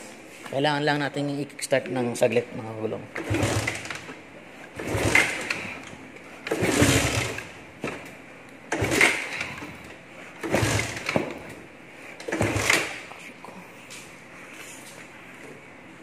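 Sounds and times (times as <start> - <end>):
motorcycle kickstart strokes: 3.1 - 11.6, 12.2 - 13.1
engine turning over: 3.2 - 5.8, 6.4 - 7.6, 8.7 - 11.6, 12.2 - 13.0.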